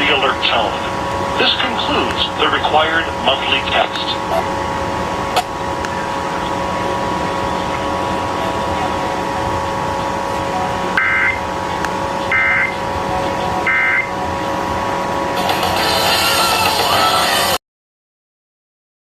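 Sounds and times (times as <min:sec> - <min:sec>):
steady hum: 0:00.0 - 0:17.6
two-tone digital data bursts: 0:11.0 - 0:11.4, 0:12.3 - 0:12.8, 0:13.6 - 0:14.1.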